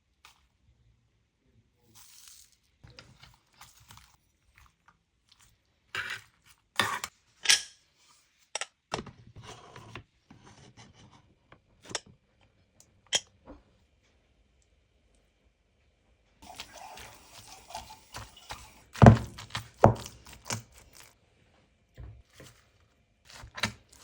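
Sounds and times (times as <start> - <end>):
food rustling: 2.0 - 6.7, 16.4 - 21.2
food crunching: 16.4 - 21.2, 22.4 - 24.0.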